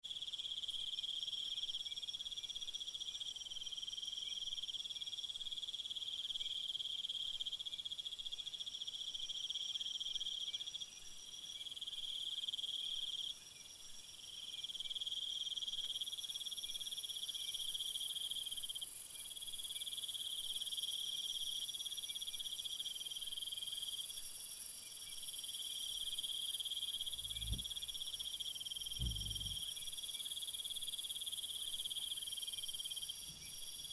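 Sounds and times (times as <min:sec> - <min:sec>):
crickets and insects trilling: 0:25.3 - 0:33.9
low thumps: 0:27.1 - 0:27.9, 0:28.9 - 0:29.6.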